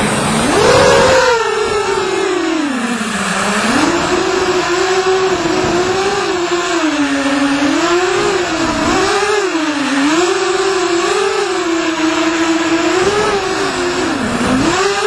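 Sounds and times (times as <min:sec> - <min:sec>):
quadcopter motors whining: 0:00.0 - 0:15.0.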